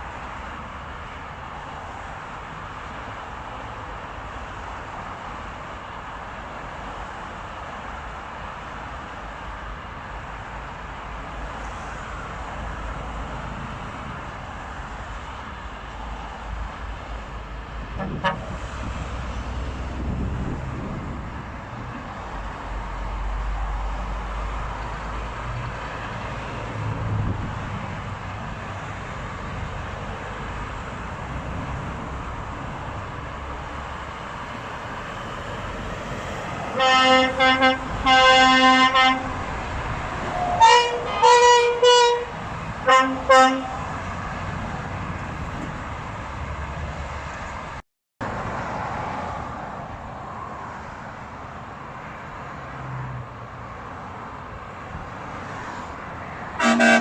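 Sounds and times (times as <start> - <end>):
road traffic noise: 0.0 - 57.0
truck air horns: 18.0 - 18.6, 36.7 - 39.4, 40.3 - 44.0, 56.6 - 57.0.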